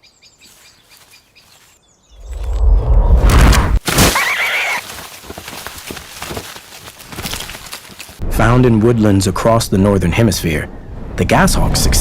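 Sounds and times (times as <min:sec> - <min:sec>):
rustling: 0:03.8 - 0:08.2
animal squealing: 0:04.1 - 0:04.9.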